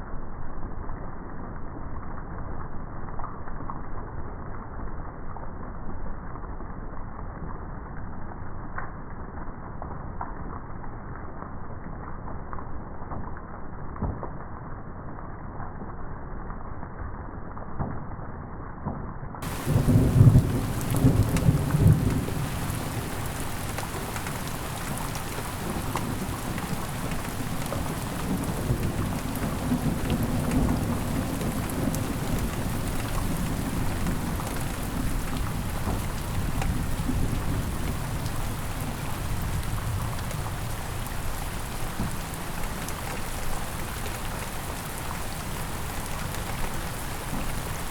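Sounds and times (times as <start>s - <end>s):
steady rain: 0.0s - 47.9s
thunder rolling: 19.4s - 42.7s.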